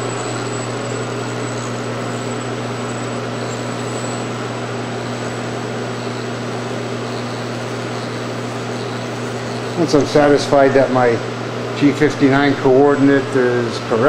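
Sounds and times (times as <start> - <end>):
milling machine spindle hum: 0.0 - 14.0.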